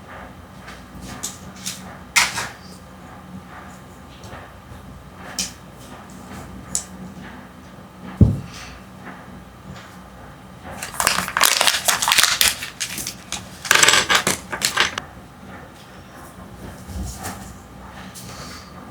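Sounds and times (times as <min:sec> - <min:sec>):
knock: 0:08.2 - 0:08.4
plastic wrapper crinkling: 0:10.8 - 0:15.0.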